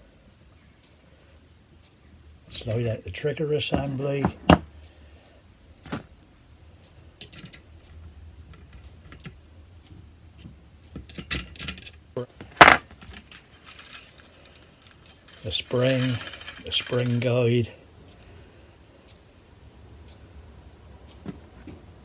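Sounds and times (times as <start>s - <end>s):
small metal parts clinking and rattling: 7.2s - 7.6s, 8.6s - 9.4s, 11.1s - 12.0s, 12.6s - 17.7s.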